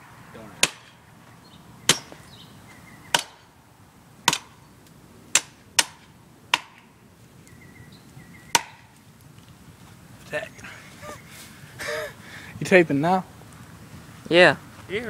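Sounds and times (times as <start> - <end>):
axe chopping tree trunk: 0.6 - 1.0, 1.9 - 2.2, 3.1 - 3.5, 4.2 - 4.6, 5.3 - 7.0, 8.5 - 9.0.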